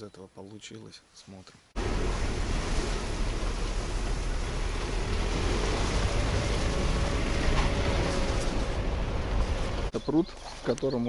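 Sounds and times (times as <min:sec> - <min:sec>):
loud low rumbling: 0:01.8 - 0:10.0.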